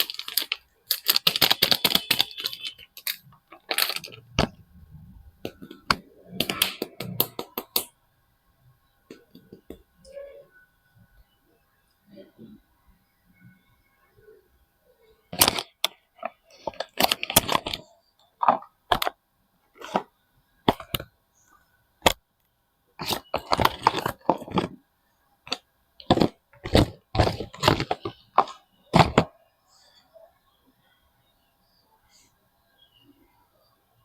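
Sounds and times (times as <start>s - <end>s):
packaging crinkling: 0.0s - 4.5s, 15.4s - 19.1s, 23.0s - 24.8s, 25.5s - 29.2s.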